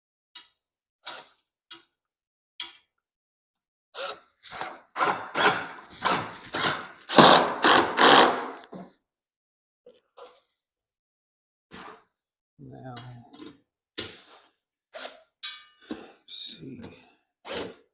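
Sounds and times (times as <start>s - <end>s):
hand tool rasping wood: 4.0s - 8.6s.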